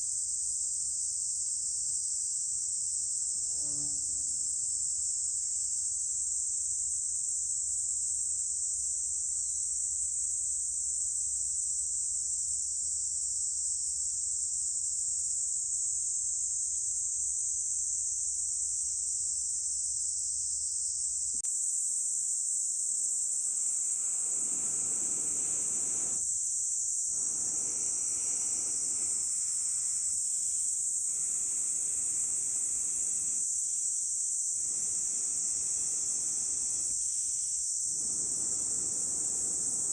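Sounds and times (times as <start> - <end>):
insect chorus shrilling: 21.9 - 39.9
low breathy rushing noise: 23.0 - 26.2, 27.1 - 33.5, 34.6 - 37.0, 37.9 - 39.9.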